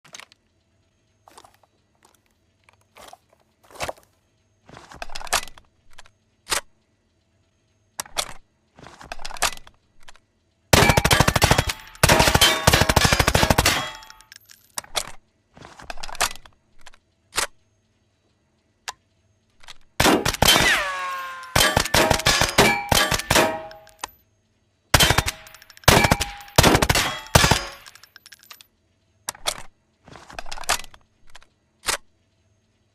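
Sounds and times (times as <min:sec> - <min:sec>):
metallic ringing: 0:20.4 - 0:24.1, 0:25.0 - 0:28.1.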